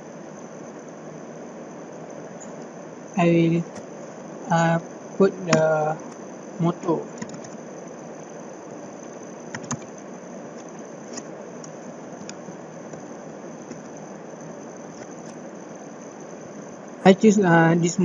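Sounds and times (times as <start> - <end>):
steady background hiss: 0.0 - 18.0
computer mouse clicks: 7.2 - 7.6, 9.5 - 10.0.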